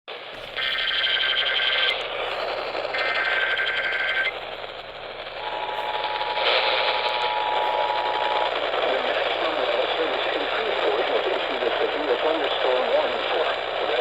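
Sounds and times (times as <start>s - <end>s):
radio hiss: 0.1s - 14.0s
digital data burst tones: 0.4s - 4.4s
two-tone attention signal: 3.0s - 4.3s.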